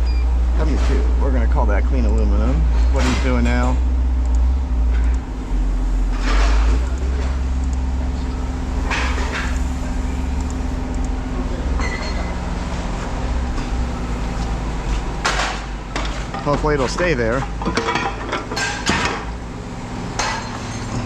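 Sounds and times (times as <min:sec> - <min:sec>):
vehicle engine idling: 0:00.0 - 0:21.0
scrap metal scraping: 0:06.0 - 0:07.4.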